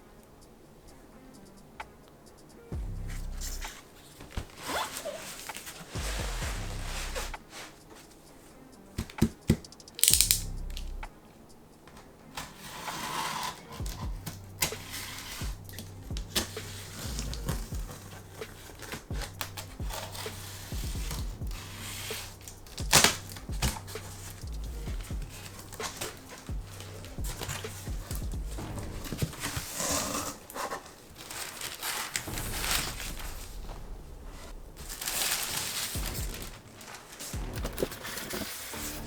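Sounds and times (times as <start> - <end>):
background music with bass: 1.2 - 3.8, 5.9 - 7.5, 8.6 - 11.2, 13.8 - 29.6, 32.3 - 35.4, 36.0 - 36.8, 37.4 - 39.0
plastic and cardboard rustling: 3.0 - 39.0.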